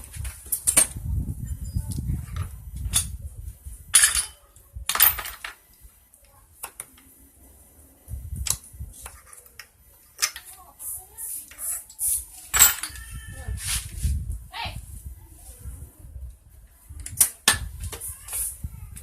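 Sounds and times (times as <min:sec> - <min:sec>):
metal tools clinking and knocking: 0:01.6 - 0:03.2, 0:03.9 - 0:05.6, 0:09.3 - 0:10.6, 0:11.7 - 0:13.1.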